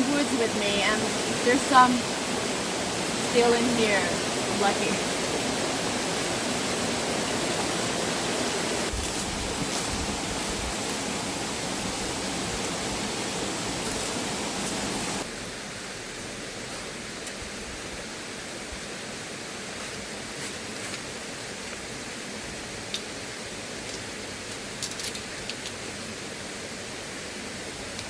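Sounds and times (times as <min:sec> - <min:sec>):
river water rushing: 0:00.0 - 0:16.6.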